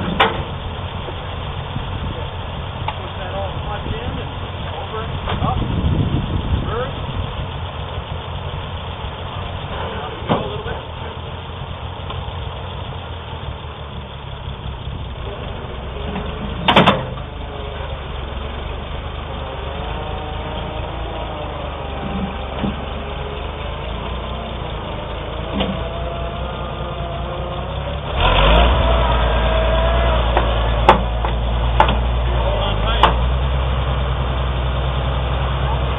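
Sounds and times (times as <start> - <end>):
tractor engine idling: 0.0 - 35.9
sharp knock: 30.4 - 32.0.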